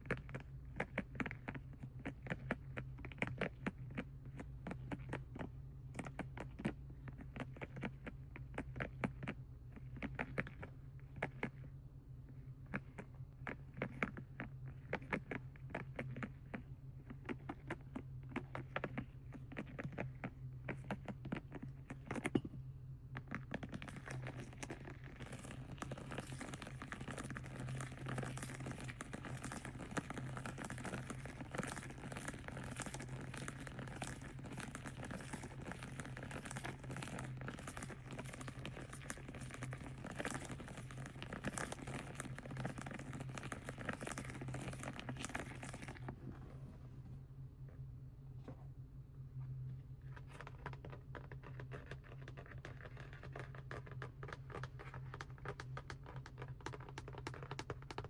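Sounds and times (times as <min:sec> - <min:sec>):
packaging crinkled and tapped: 0:50.3 - 0:58.0.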